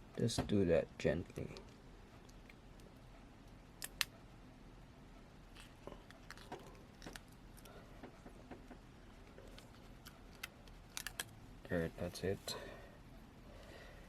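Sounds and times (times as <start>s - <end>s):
tape being peeled off: 9.4s - 11.4s.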